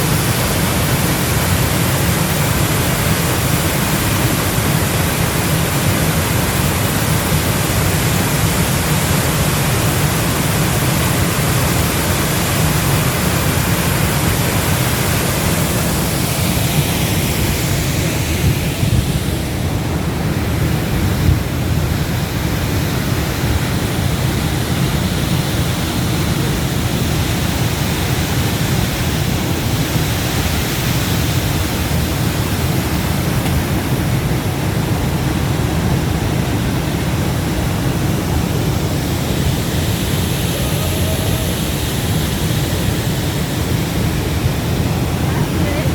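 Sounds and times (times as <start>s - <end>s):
waterfall rushing: 0.0s - 45.9s.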